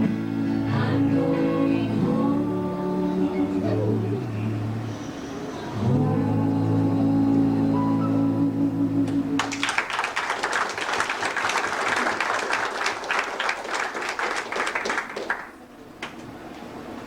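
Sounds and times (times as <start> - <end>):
audience clapping: 9.4 - 16.3.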